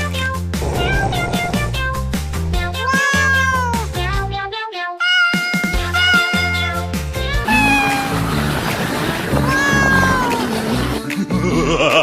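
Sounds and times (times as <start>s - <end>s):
kitten meowing: 9.4s - 10.4s.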